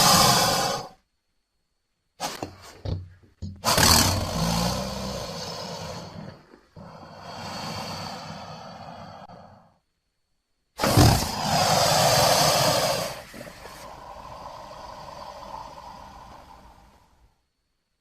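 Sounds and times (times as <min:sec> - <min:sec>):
monster roaring: 0:00.0 - 0:01.0, 0:03.6 - 0:09.7, 0:10.8 - 0:17.1.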